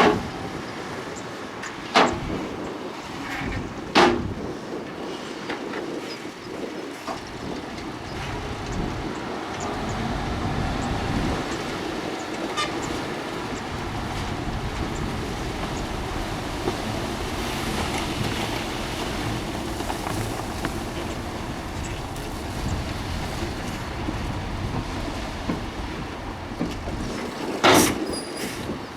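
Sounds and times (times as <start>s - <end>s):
heavy machinery engine rumble: 7.2s - 28.9s.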